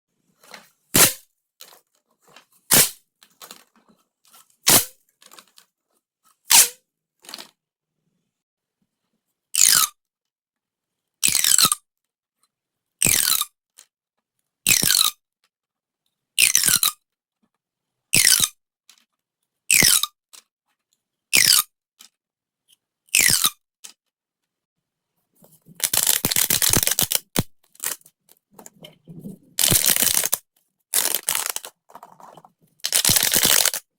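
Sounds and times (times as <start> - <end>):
plastic pop tube crackling: 1.0 - 1.2, 25.7 - 28.0, 28.6 - 30.4, 31.0 - 33.9.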